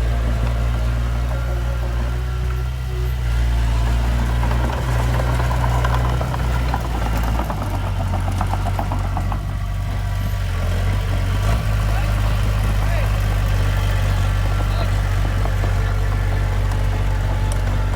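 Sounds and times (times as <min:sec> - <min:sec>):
diesel engine running: 0:00.0 - 0:17.9
rapid clatter: 0:00.0 - 0:17.9.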